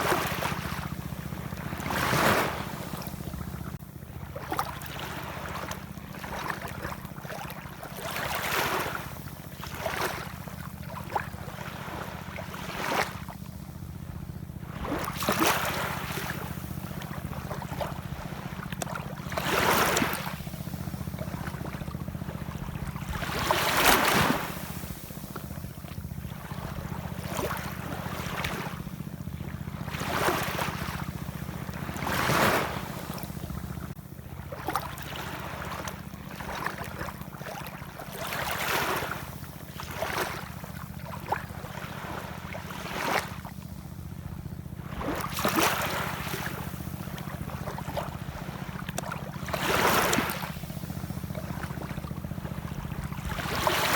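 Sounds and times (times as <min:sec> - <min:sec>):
steady low rumble: 0:13.4 - 0:34.9
ocean waves washing in: 0:14.6 - 0:34.0, 0:44.8 - 0:53.9.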